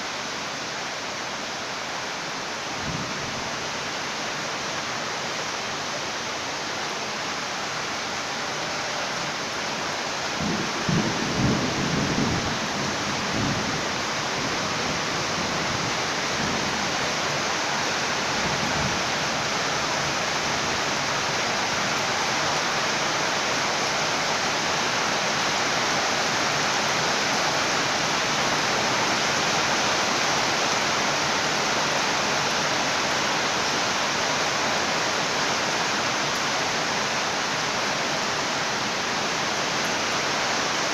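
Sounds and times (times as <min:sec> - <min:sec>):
steady rain: 0:00.0 - 0:40.9
thunder rumbling: 0:10.4 - 0:15.5.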